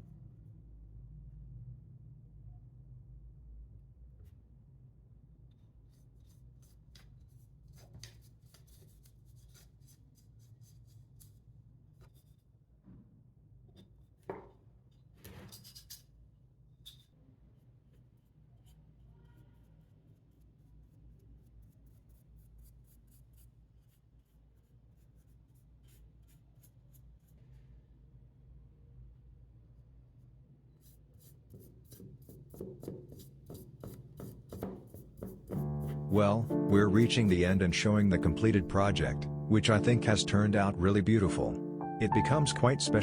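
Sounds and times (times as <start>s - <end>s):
scratchy rubbing on wood: 31.2s - 37.3s.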